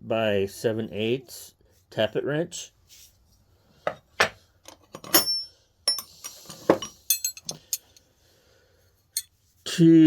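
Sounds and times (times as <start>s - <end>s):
wrenches clinking: 4.7s - 8.0s.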